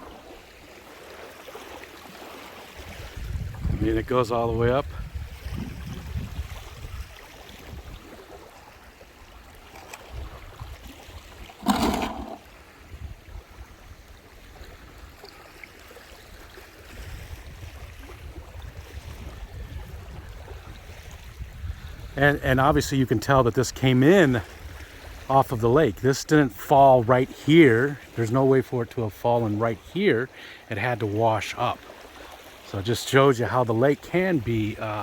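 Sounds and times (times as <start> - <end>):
lake water washing on shore: 0.0 - 12.5, 13.3 - 35.0
wind buffeting microphone: 3.0 - 7.1, 17.0 - 23.0.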